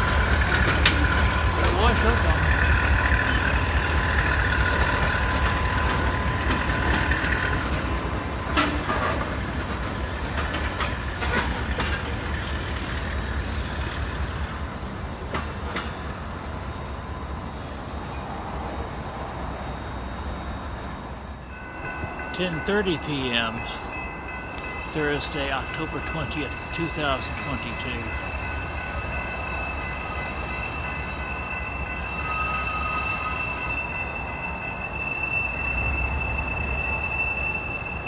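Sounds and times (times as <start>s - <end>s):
wheels clicking over rail joints: 0.0s - 16.9s
freight train rumbling: 0.0s - 38.0s.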